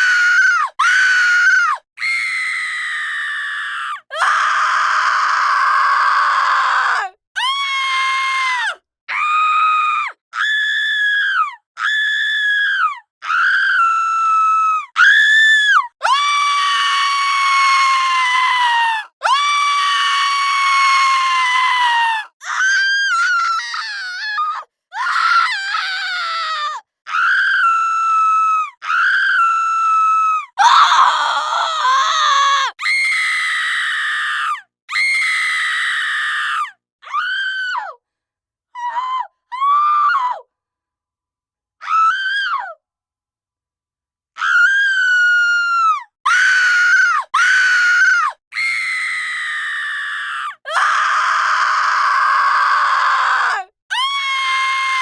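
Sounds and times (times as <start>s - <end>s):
woman screaming: 29.4s - 36.6s.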